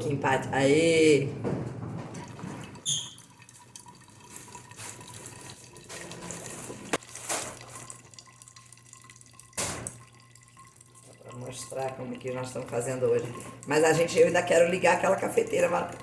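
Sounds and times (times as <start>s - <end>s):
water trickling through a filter: 2.2s - 16.0s.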